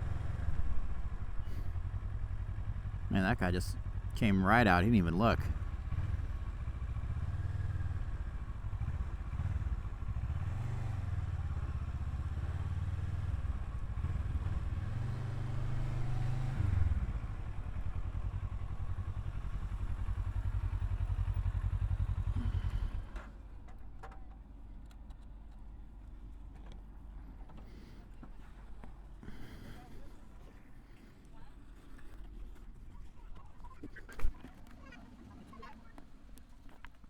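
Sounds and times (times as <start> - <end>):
motorcycle engine revving: 5.5 - 23.1.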